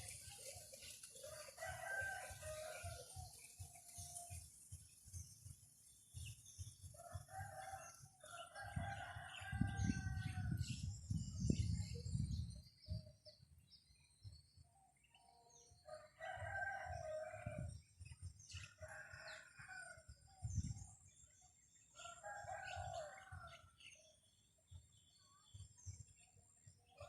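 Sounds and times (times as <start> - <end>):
rooster crowing: 1.3 - 3.0, 22.0 - 23.4
wind gusting on microphone: 8.5 - 13.2, 16.3 - 21.2.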